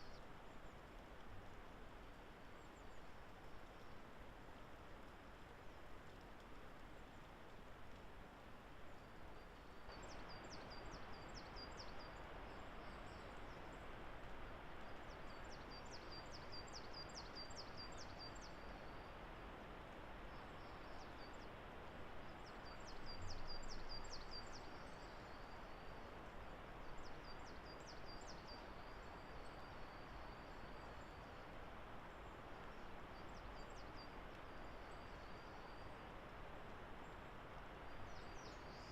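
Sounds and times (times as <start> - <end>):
faint background hiss: 0.0 - 38.9
songbird singing: 8.9 - 19.2, 22.2 - 36.1, 37.1 - 38.9.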